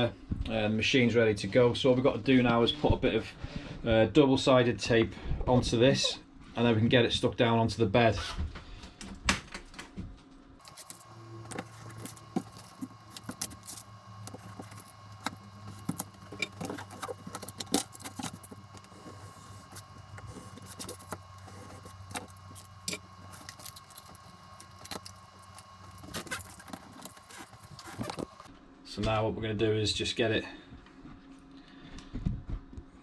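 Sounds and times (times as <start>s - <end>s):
steady low hum: 10.6s - 28.5s
tape crackling and clicking: 10.6s - 28.5s.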